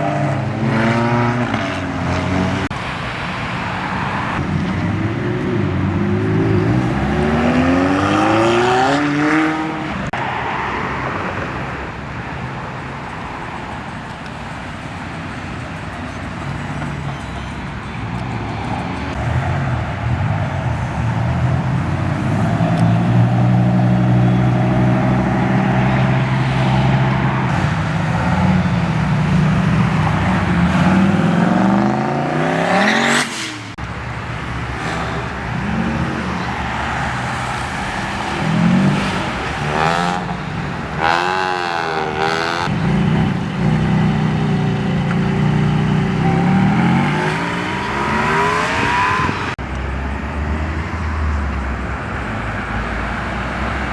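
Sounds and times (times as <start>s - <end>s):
car engines accelerating: 0.0s - 12.0s, 18.1s - 53.9s
car engine revving hard: 5.6s - 10.1s, 20.8s - 33.8s, 34.7s - 49.6s
engine rev blips: 22.2s - 49.7s.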